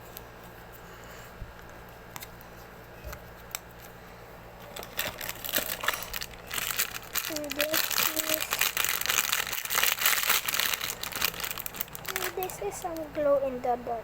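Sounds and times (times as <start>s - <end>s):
packaging crinkling: 4.6s - 13.6s.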